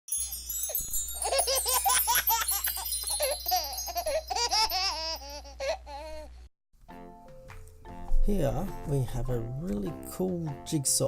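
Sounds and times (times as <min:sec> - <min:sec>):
bright chiming: 0:00.1 - 0:05.2
baby giggling and laughing: 0:00.6 - 0:06.4.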